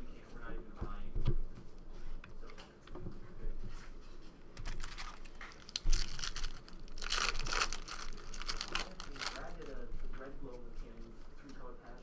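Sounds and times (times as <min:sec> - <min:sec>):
wrapper crinkling and tearing: 0:04.6 - 0:09.7.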